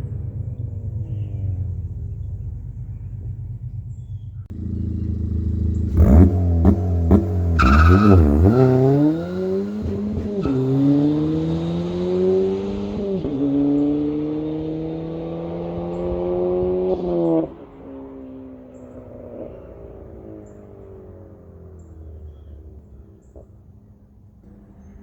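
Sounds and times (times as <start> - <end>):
engine idling quietly: 0.0 - 7.6, 17.4 - 25.0
car engine accelerating hard: 0.0 - 25.0.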